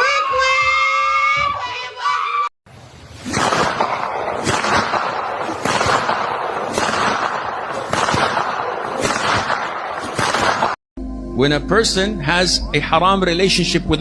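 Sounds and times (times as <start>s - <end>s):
dense rapid crackling bangs: 3.2s - 10.8s
louder bangs: 3.2s - 10.8s.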